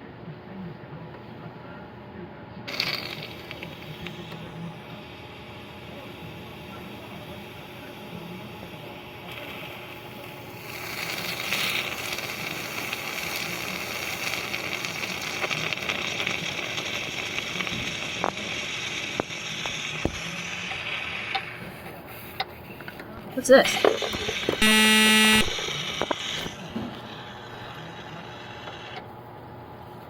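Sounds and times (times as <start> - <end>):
gas hissing through fittings: 2.7 - 29.0.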